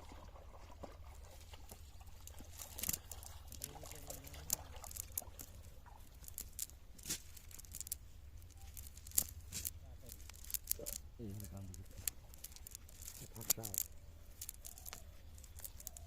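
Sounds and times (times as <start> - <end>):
small water splashes and drips: 0.0 - 6.2.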